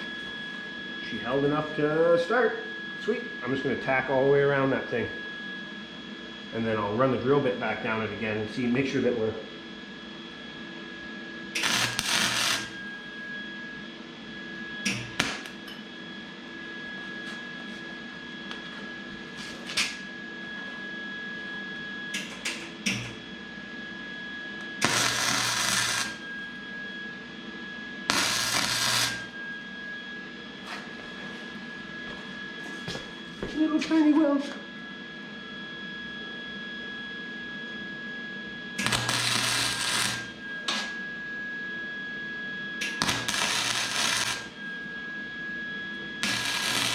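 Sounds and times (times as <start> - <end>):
steady high whine: 0.0 - 46.9
welding arc crackling and hissing: 11.6 - 12.8, 14.9 - 15.6, 19.3 - 20.0, 22.2 - 23.2, 24.8 - 26.2, 28.1 - 29.4, 38.8 - 41.0, 42.8 - 44.6, 46.2 - 46.9
arc strike sputters and clicks: 38.8 - 40.8, 42.8 - 44.5.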